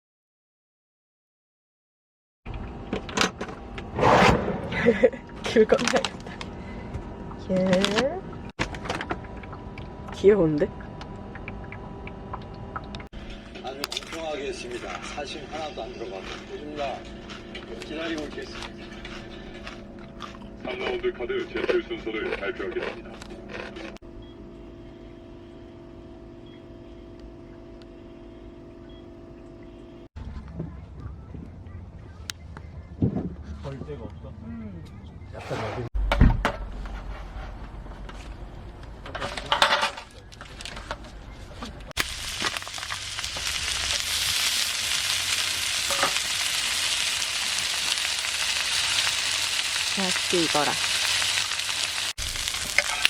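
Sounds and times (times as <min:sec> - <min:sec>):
steady mechanical hum: 0:02.5 - 0:53.0
meat sizzling on grill: 0:42.0 - 0:53.0.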